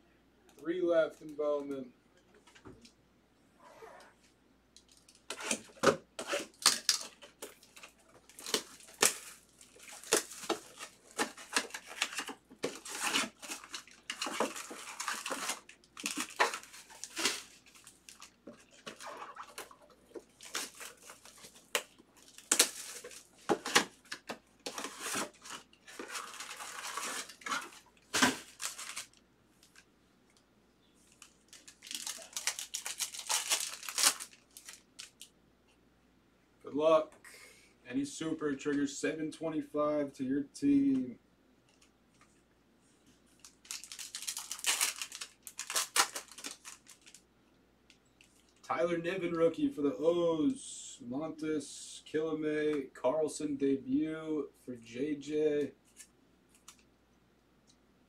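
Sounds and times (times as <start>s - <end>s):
wrappers tearing and crinkling: 4.9s - 29.8s, 31.1s - 35.3s, 43.4s - 47.2s.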